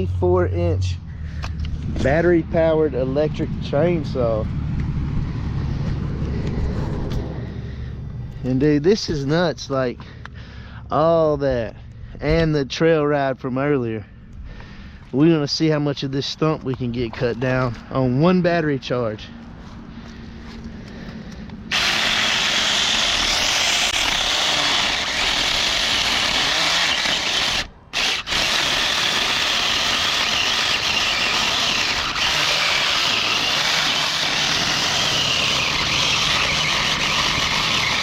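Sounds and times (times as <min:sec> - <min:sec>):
electric chainsaw cutting wood: 0:21.7 - 0:38.0.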